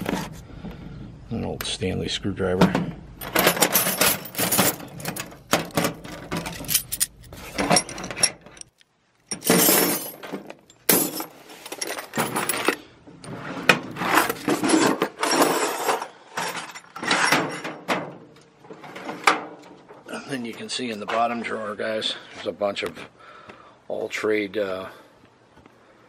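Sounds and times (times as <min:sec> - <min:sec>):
metal hand tools clattering: 0:03.2 - 0:08.7.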